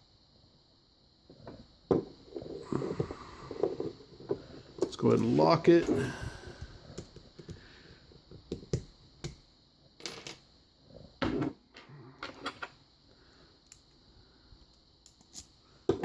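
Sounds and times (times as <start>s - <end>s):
lock and picking tools clicking: 14.6s - 15.6s.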